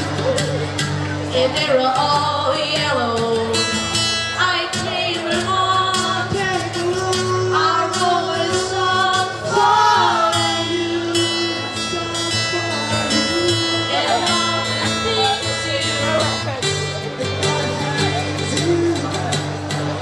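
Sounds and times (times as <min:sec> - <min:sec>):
strummed acoustic guitar: 0:00.0 - 0:20.0
person singing: 0:04.4 - 0:15.4.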